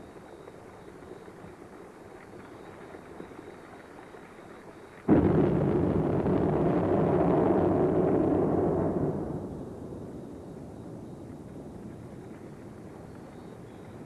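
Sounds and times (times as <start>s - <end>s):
low background rumble: 5.0s - 14.0s
volcanic explosive blast roar: 5.1s - 13.4s.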